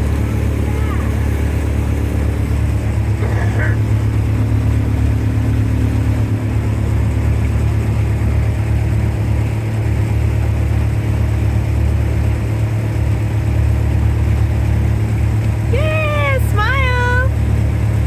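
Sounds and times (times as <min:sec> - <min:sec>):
motorboat engine running: 0:00.0 - 0:18.0.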